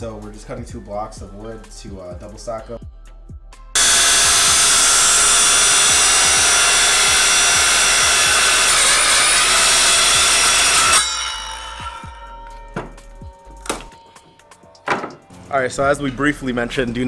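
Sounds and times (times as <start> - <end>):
power saw cutting wood: 3.8 - 13.9.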